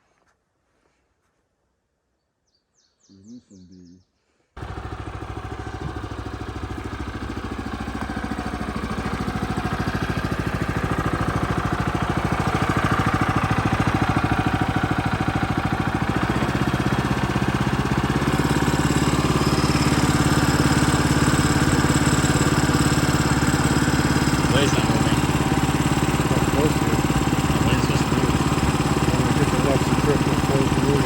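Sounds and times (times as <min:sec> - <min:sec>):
small gasoline engine running: 0:04.6 - 0:31.0.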